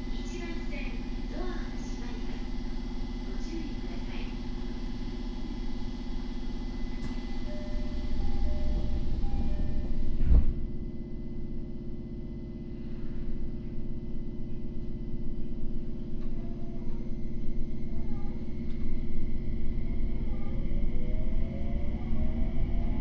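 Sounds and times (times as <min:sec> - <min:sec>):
train wheels rumbling on rail: 0:00.0 - 0:10.9.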